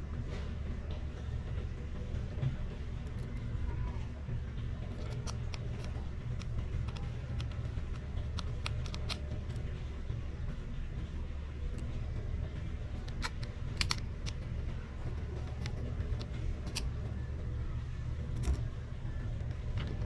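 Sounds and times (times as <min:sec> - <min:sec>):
steady low rumble: 0:00.0 - 0:20.0
small tools clicking and tapping: 0:04.9 - 0:09.3, 0:13.0 - 0:14.4.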